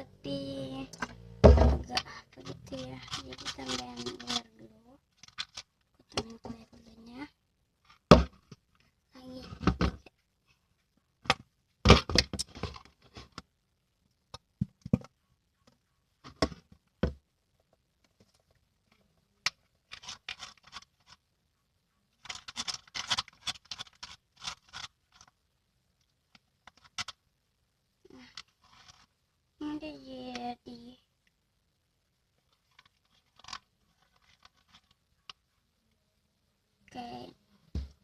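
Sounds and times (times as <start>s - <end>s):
stirrer scraping sticky slime: 2.1s - 4.4s.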